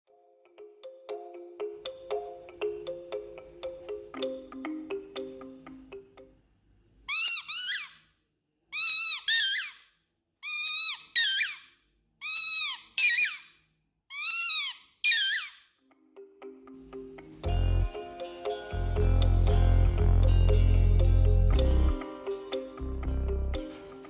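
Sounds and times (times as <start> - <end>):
squeaky dog toy squeaking: 7.1 - 8.1, 8.7 - 15.7.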